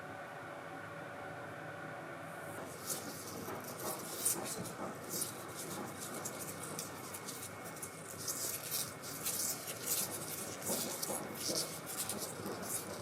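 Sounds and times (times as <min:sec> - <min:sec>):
cats rustling on bedding: 0:02.7 - 0:13.0.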